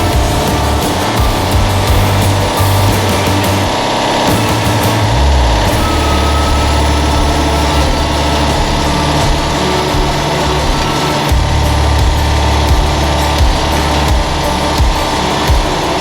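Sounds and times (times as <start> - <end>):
background music with bass notes: 0.0 - 16.0.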